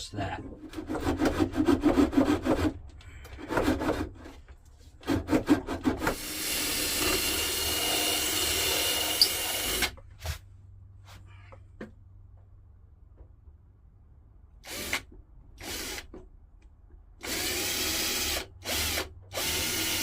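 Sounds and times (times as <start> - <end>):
quick sawing strokes on wood: 0.6 - 2.7
power tool running: 17.2 - 20.0.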